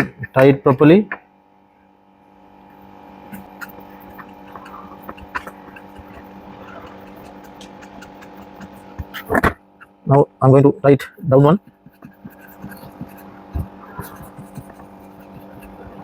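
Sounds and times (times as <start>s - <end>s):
steady mechanical hum: 0.0s - 16.0s.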